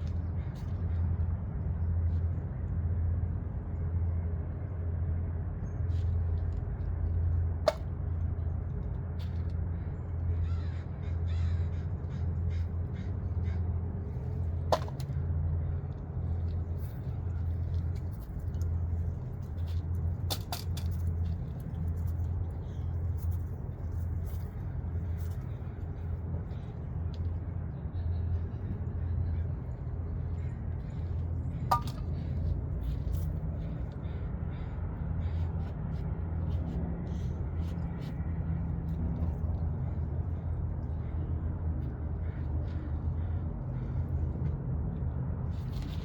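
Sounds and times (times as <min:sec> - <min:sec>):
low outdoor rumble: 0:00.0 - 0:46.0
crows cawing: 0:10.4 - 0:13.7, 0:34.0 - 0:35.7.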